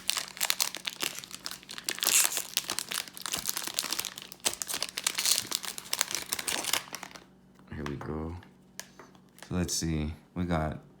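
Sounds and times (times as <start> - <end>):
plastic wrapper crinkling and tearing: 0.0 - 7.3.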